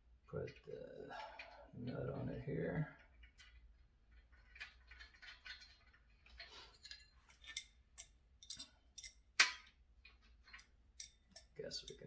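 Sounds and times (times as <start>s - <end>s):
metal clicks and scrapes: 3.0s - 12.0s.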